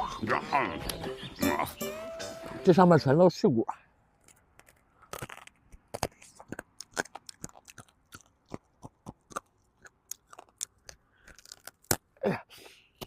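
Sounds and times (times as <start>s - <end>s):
chewing and crunching bone: 4.2s - 12.3s.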